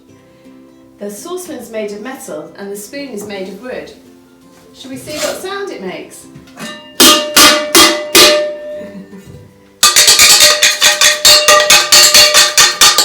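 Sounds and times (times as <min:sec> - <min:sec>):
wooden spoon banging on saucepan: 0:06.6 - 0:08.7, 0:09.8 - 0:13.0.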